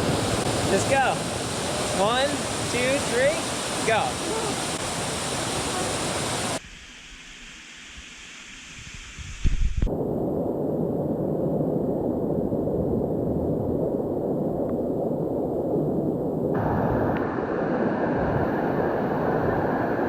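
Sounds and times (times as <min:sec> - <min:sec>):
waterfall rushing: 0:00.0 - 0:06.6.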